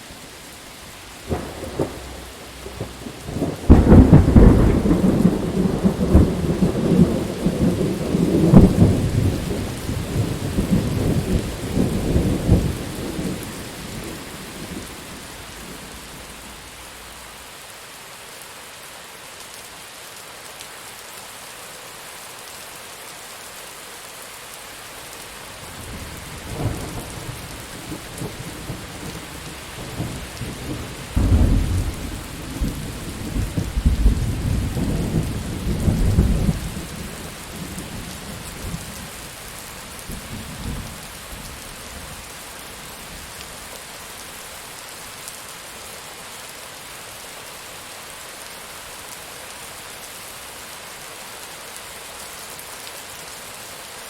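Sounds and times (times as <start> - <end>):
heavy rain hissing: 0.0 - 54.0
thunder rolling: 1.3 - 17.0, 29.8 - 36.8.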